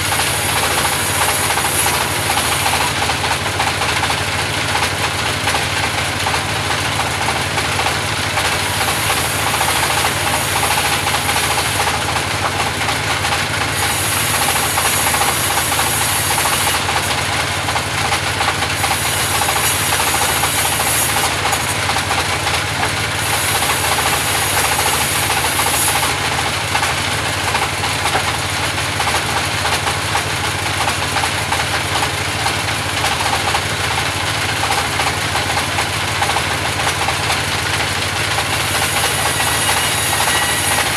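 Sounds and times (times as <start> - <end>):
saw blade cutting wood hiss: 0.0 - 3.0, 8.5 - 12.1, 13.7 - 17.3, 18.7 - 21.9, 23.2 - 26.2, 38.3 - 40.9
band sawmill running: 0.0 - 40.9.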